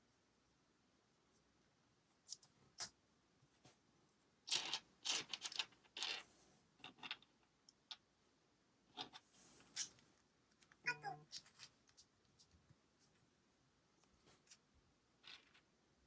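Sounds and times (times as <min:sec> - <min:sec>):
plastic bricks clicking and rattling: 0:04.5 - 0:08.0, 0:15.2 - 0:15.7.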